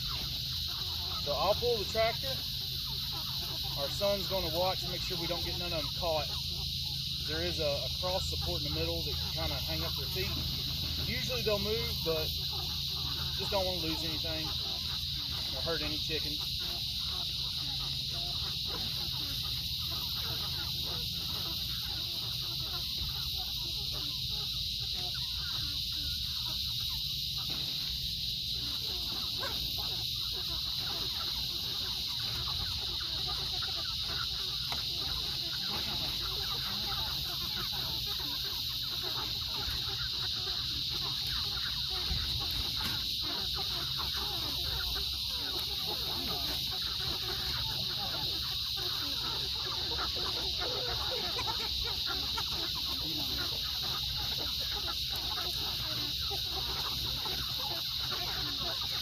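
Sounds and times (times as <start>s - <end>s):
chickens clucking and peeping: 0.0s - 59.0s.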